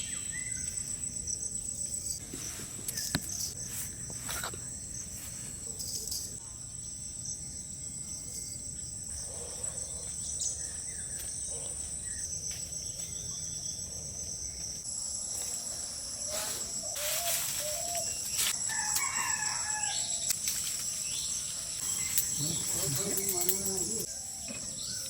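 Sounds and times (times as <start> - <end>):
insects chirring: 0.0 - 25.0
rooster crowing: 18.6 - 20.3.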